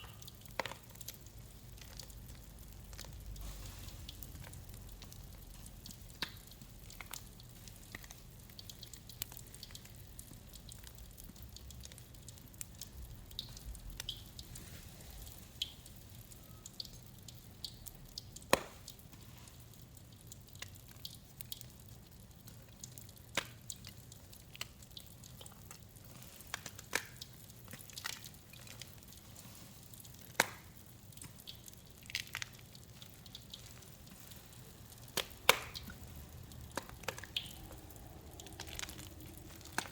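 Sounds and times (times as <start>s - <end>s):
faint steady hum: 0.0s - 39.9s.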